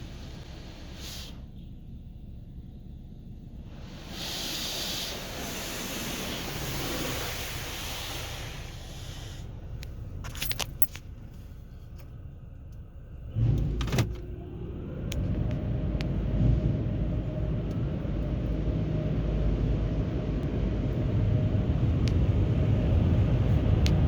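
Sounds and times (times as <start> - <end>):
water spray hissing: 3.8 - 9.5
loud low rumble: 12.2 - 24.0.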